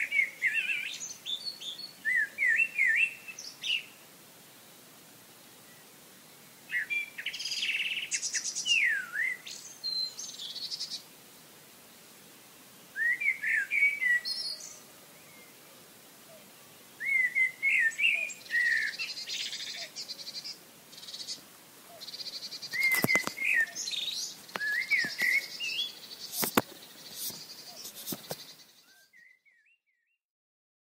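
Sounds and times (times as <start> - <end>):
faint steady hiss: 0.0 - 29.3
songbirds chirping: 0.0 - 30.1
sharp clicks: 22.8 - 23.4, 26.3 - 27.4.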